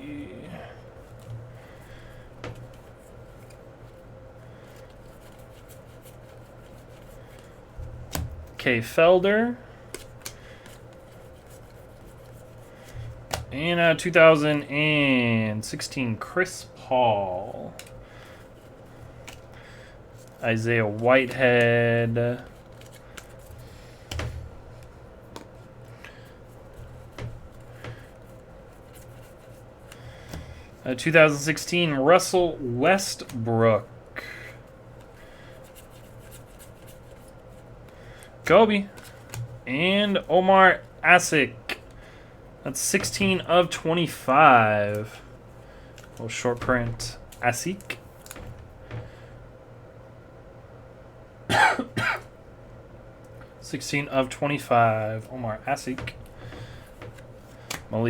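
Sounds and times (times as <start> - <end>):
trading cards rustling: 0.2 - 7.7, 9.8 - 14.7, 17.5 - 31.7, 35.0 - 41.9, 42.7 - 49.3
trading cards sliding: 9.9 - 13.5, 20.2 - 30.7.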